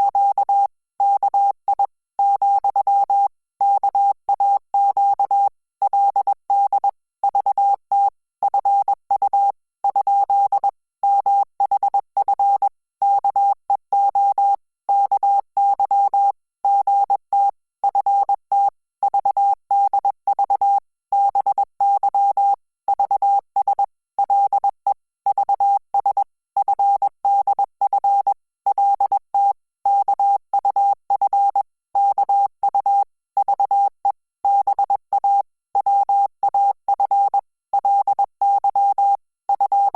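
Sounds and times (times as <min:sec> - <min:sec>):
morse code beeps: 0:34.4 - 0:39.9.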